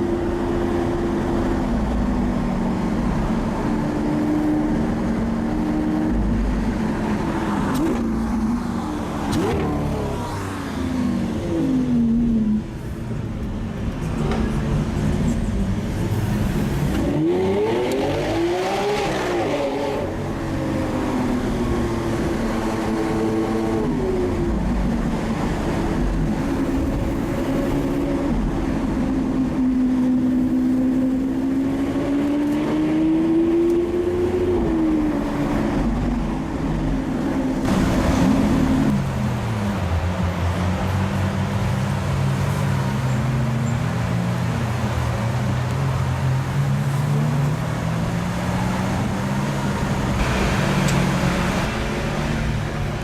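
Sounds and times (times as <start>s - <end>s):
car engine revving: 14.1s - 53.0s.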